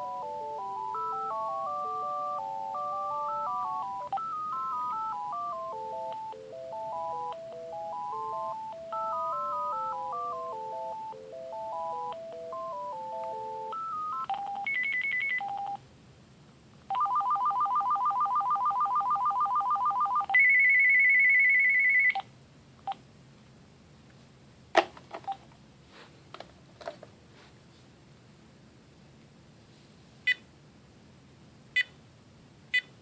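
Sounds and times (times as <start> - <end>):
phone electronic ringtones: 0.0 - 15.8, 16.9 - 22.2.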